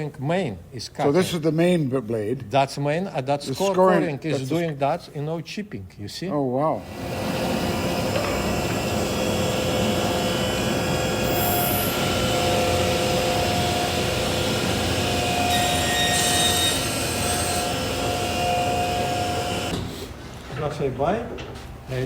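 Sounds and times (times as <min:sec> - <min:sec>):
table saw running with whine: 0:06.8 - 0:19.7.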